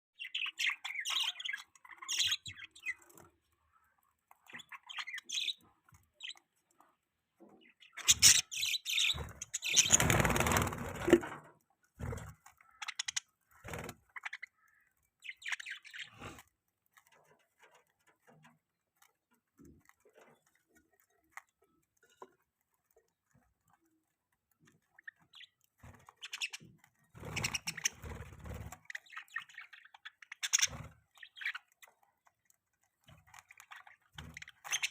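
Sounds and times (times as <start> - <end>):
budgerigars chirping: 0.2 - 3.1, 4.5 - 6.4, 7.5 - 11.0, 12.6 - 16.4, 24.9 - 31.8, 33.4 - 34.9.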